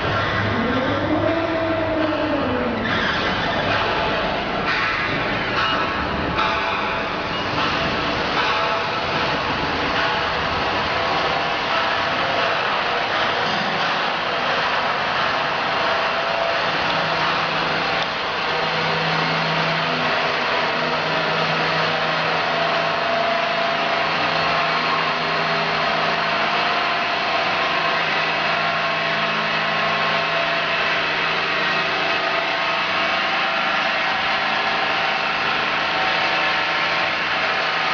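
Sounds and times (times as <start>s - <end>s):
low machine hum: 0.0s - 37.9s.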